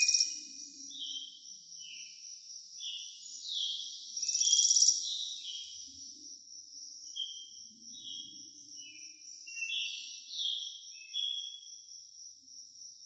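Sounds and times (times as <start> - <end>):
rapid bird trill: 0.0 - 0.4
songbirds chirping: 0.0 - 13.0.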